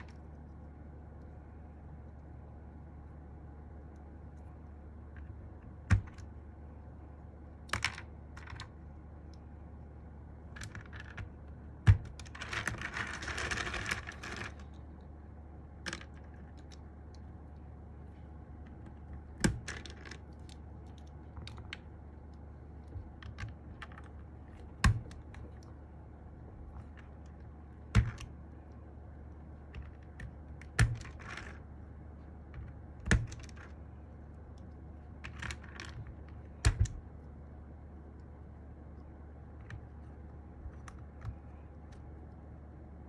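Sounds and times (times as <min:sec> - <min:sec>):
clatter of keyboard parts: 0:11.9 - 0:14.7, 0:29.7 - 0:31.6.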